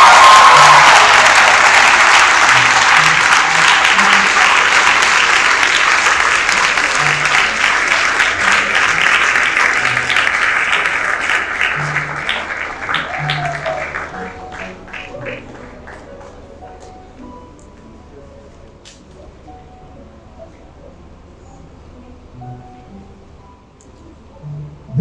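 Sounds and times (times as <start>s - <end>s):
audience applauding: 0.0s - 16.4s
background music: 0.0s - 25.0s.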